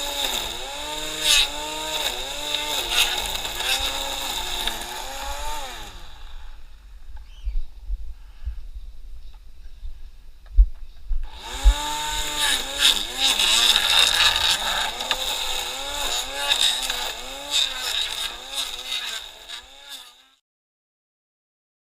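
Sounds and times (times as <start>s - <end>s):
string trimmer engine revving: 0.0s - 6.6s, 11.2s - 20.4s
hiss of spinning trimmer line: 11.3s - 19.6s.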